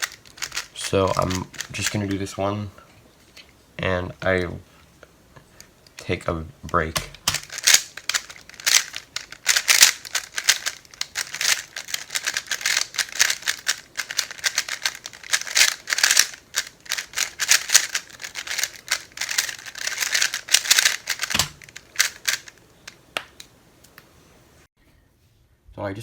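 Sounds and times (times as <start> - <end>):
puzzle cube clicking: 0.0 - 2.1, 7.0 - 23.0.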